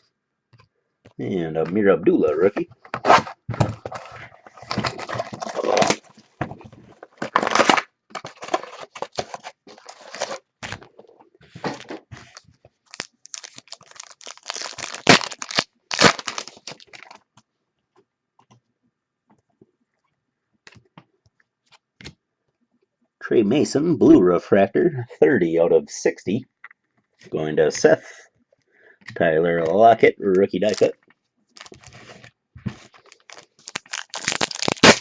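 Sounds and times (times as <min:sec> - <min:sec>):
wrappers tearing and crinkling: 0:04.7 - 0:06.1, 0:07.0 - 0:10.4, 0:12.2 - 0:17.2, 0:31.6 - 0:32.2, 0:32.9 - 0:35.0.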